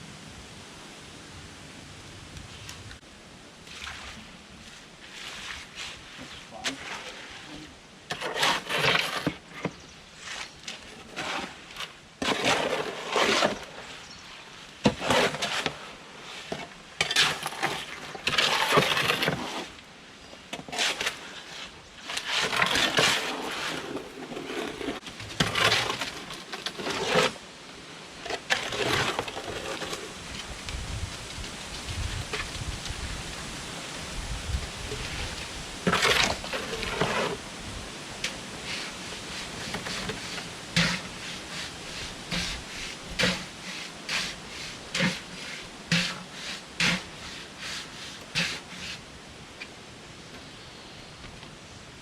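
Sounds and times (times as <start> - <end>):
gritty material scraping and rattling: 5.1 - 14.2, 14.8 - 19.8, 20.5 - 27.4, 28.2 - 33.1, 34.8 - 37.4, 38.2 - 49.0.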